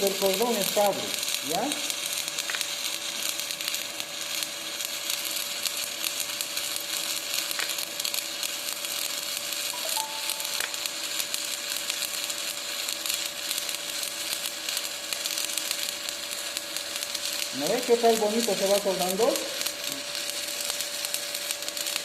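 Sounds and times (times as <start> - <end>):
welding arc crackling: 0.0 - 22.0
steady tone: 9.8 - 11.1.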